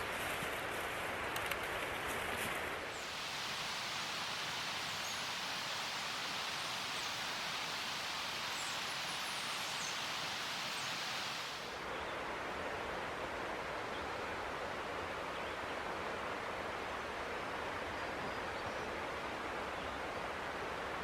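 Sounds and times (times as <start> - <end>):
steady rushing ambience: 2.9 - 11.8.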